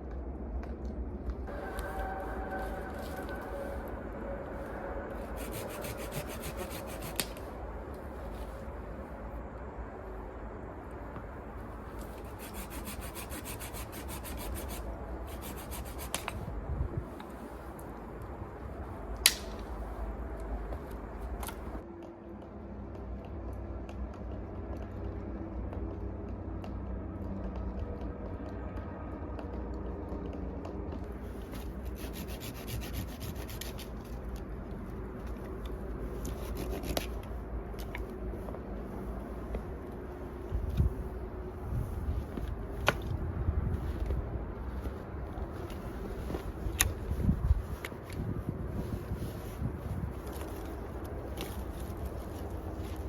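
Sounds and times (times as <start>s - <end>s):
low rumble: 0.0s - 12.3s
steady low rumble: 0.0s - 53.0s
rubbing and scraping: 1.4s - 9.3s, 11.5s - 18.2s, 31.1s - 53.0s
rapid scraping strokes: 1.5s - 9.1s, 11.7s - 16.5s, 31.2s - 34.4s, 35.3s - 37.4s.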